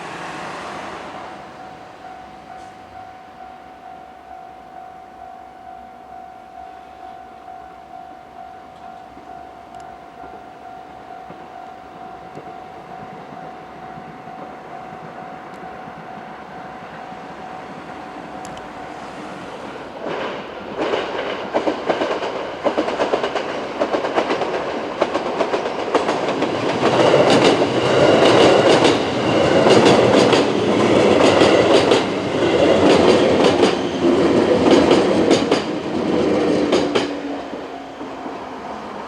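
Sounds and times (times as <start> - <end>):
train wheels clacking over rail joints: 17.8 - 39.0.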